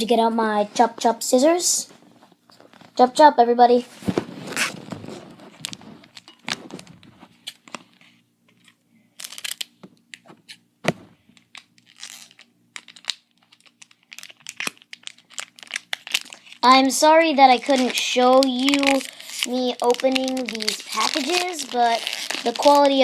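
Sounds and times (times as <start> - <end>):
faint steady hum: 0.0 - 23.0
foil wrapper crinkling: 4.0 - 9.8, 11.2 - 23.0.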